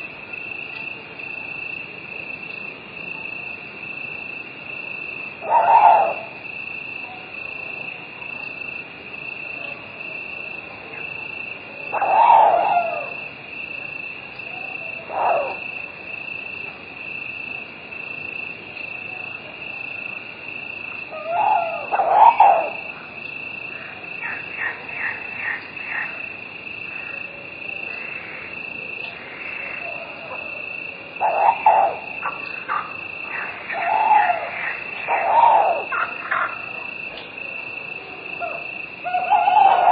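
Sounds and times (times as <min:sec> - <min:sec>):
crickets chirring: 0:00.0 - 0:39.9
animal call: 0:05.4 - 0:06.4, 0:11.9 - 0:13.2, 0:14.5 - 0:15.9, 0:21.0 - 0:22.9, 0:29.4 - 0:37.0, 0:37.6 - 0:39.9.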